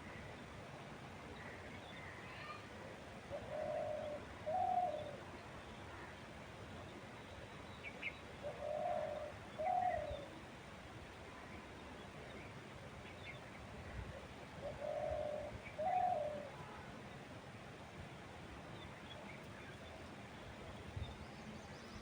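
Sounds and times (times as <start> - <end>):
dove cooing: 3.3 - 5.2, 8.4 - 10.3, 14.6 - 16.7.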